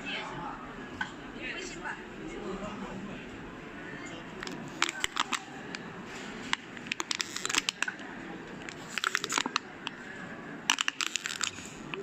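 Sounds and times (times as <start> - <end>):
crinkly pet toy being bitten: 4.4 - 5.8, 6.8 - 8.0, 8.7 - 9.7, 10.7 - 12.0.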